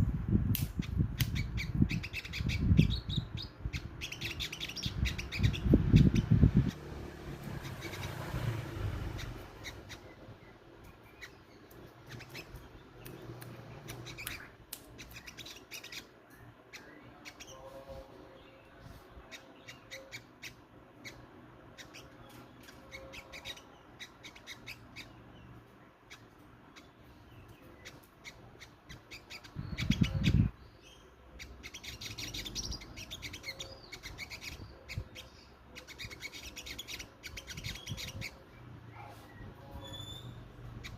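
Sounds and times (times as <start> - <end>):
bird calling sharp chips: 10.9 - 16.5.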